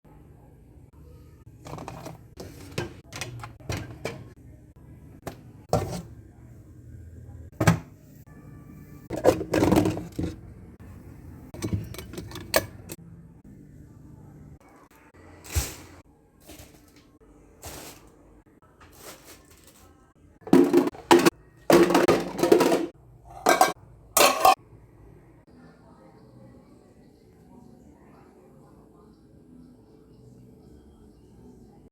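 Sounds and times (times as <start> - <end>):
dishes clattering and clinking: 1.7 - 4.4, 9.1 - 10.4, 11.5 - 13.0, 20.5 - 24.6
containers knocking in refrigerator: 20.5 - 24.6.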